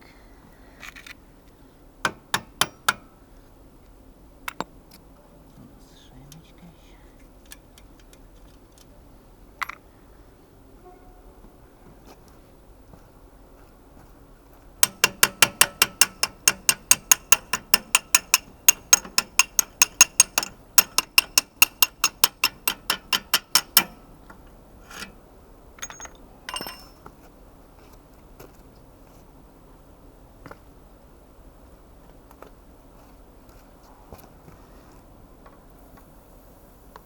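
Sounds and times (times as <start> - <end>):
ratchet wrench clicking: 2.1 - 3.1, 14.8 - 24.0
faint metal clinks: 25.8 - 27.1.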